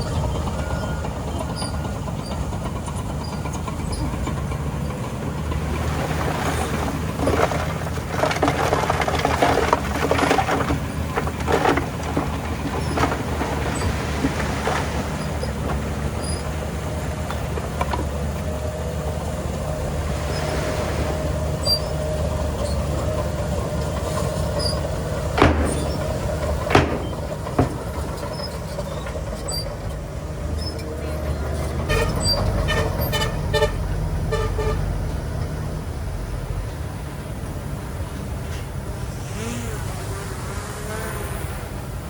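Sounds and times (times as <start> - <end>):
heavy diesel engine running: 0.0 - 40.3
sharp metallic knocks: 25.2 - 29.6.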